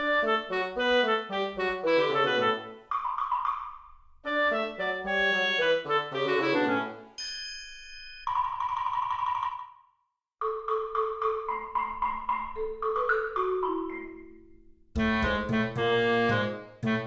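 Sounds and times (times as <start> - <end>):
marimba melody: 10.4 - 14.8.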